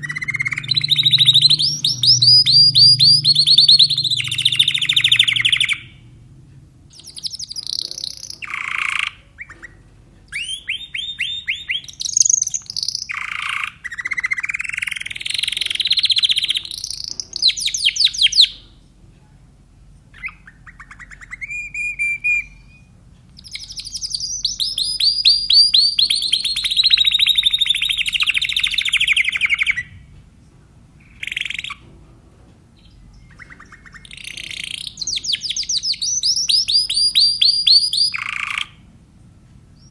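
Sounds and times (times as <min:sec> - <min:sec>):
canary singing trills: 0:00.0 - 0:06.2, 0:06.9 - 0:18.8, 0:20.1 - 0:30.1, 0:31.0 - 0:31.9, 0:32.8 - 0:38.9.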